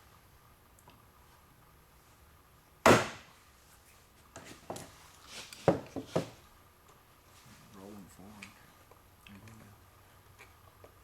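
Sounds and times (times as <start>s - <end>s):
sharp knock on metal: 2.9s - 3.2s.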